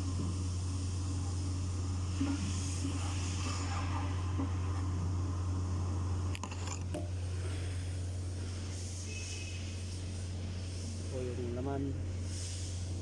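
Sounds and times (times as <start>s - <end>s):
steady low hum: 0.0s - 13.0s
light metal scraping: 6.3s - 7.7s.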